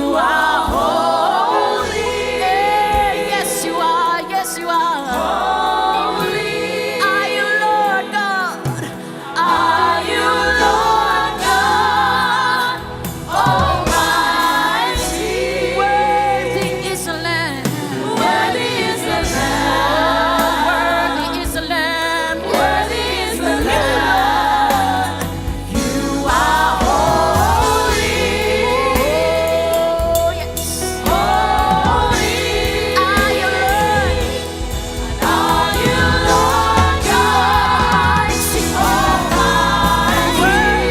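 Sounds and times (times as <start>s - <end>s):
choir backing voices: 0.0s - 40.9s
gospel singers with band: 0.0s - 40.9s.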